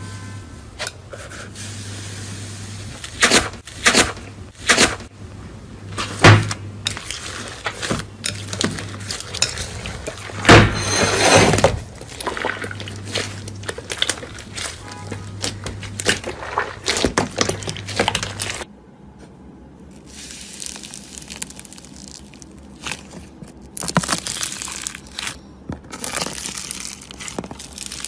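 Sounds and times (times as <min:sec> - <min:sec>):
slime crackling and popping: 0:20.3 - 0:28.0.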